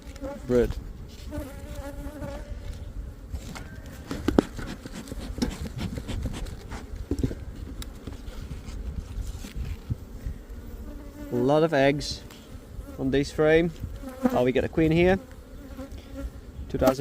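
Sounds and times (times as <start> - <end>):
bees buzzing: 1.2 - 3.3, 13.9 - 16.7.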